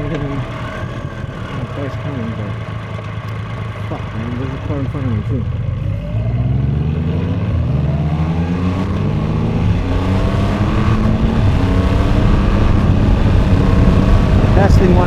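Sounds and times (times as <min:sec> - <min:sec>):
motorcycle engine accelerating: 0:00.0 - 0:15.0
wind rush: 0:07.6 - 0:15.0.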